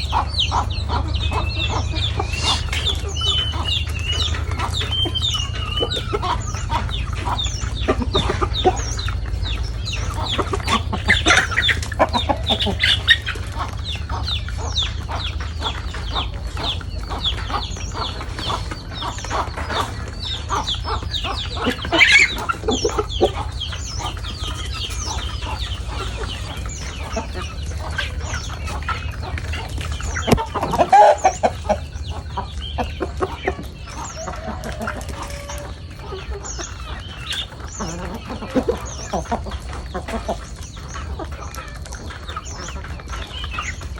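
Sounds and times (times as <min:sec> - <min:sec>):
chickens clucking: 0:00.0 - 0:43.9.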